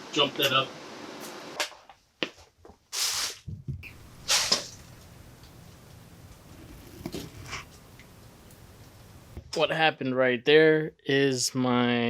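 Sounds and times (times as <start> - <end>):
welding arc hissing: 3.0 - 6.5.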